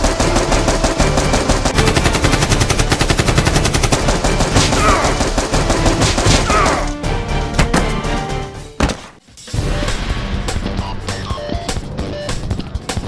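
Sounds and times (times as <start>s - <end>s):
rapid automatic gunfire: 0.0s - 6.6s.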